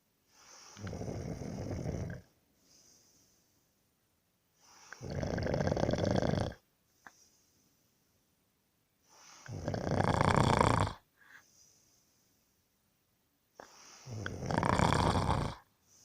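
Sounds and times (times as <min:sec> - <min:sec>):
quiet breathing: 0:00.0 - 0:08.4, 0:09.0 - 0:12.9, 0:13.5 - 0:16.0
person snoring: 0:00.5 - 0:02.3, 0:04.6 - 0:06.6, 0:09.4 - 0:11.0, 0:13.6 - 0:15.7.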